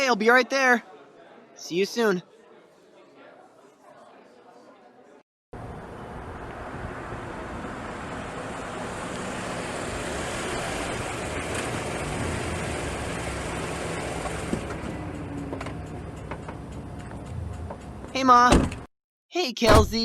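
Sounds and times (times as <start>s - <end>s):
car rushing on road: 5.6s - 18.1s.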